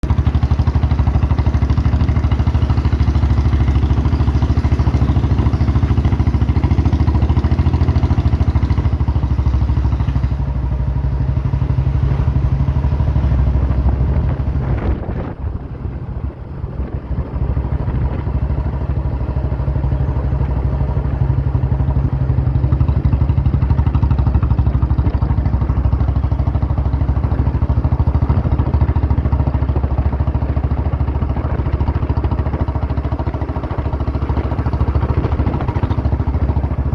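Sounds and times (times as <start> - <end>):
motorcycle engine thumping: 19.6 - 36.9.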